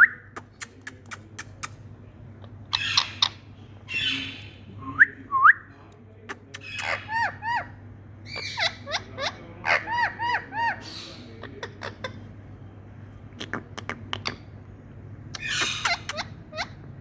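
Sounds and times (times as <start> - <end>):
parrot squeaky calls: 2.4 - 4.7, 6.6 - 12.3, 15.3 - 16.9.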